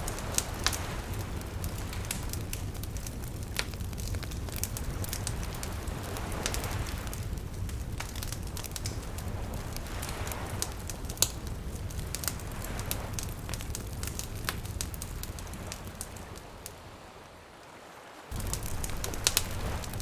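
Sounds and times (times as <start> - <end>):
wood fire crackling and popping: 0.0 - 16.7, 18.3 - 20.0
small waves lapping: 15.3 - 20.0.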